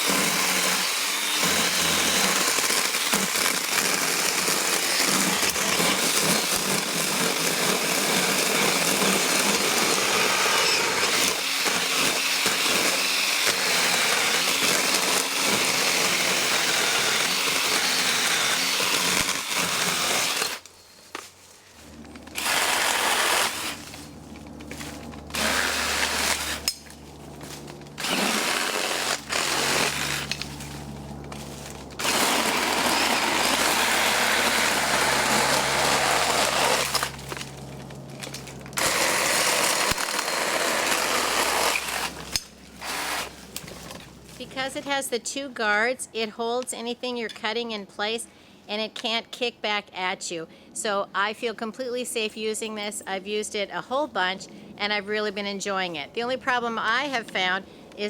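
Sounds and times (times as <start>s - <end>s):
chainsaw cutting branches: 0.0s - 44.9s
low steady hum: 19.1s - 58.0s.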